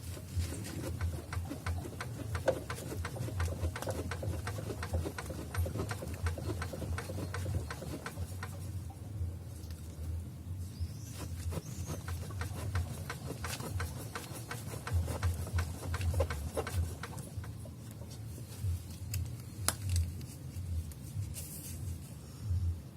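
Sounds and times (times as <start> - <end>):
low steady hum: 0.0 - 22.9
shock absorber strut knocking: 0.8 - 8.7, 12.0 - 17.6.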